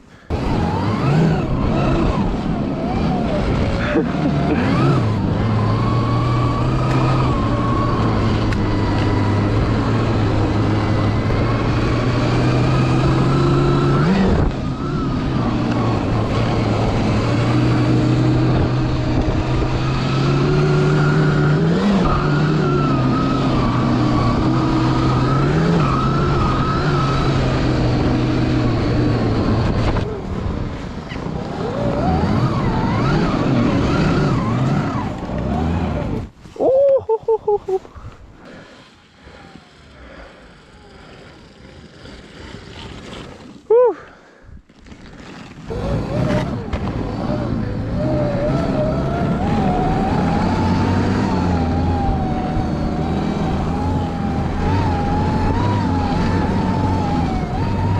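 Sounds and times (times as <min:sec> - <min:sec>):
electric motor whine: 0:00.3 - 0:30.2, 0:45.6 - 0:57.9.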